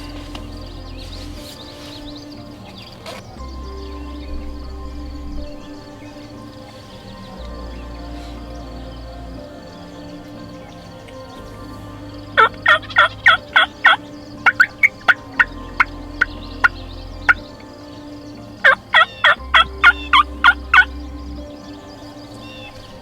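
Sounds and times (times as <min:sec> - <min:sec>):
faint background music: 0:00.0 - 0:23.0.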